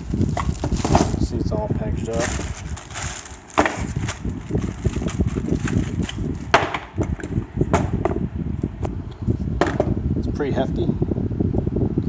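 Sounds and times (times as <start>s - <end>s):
packaging rustling: 0.0s - 1.3s, 2.0s - 6.7s.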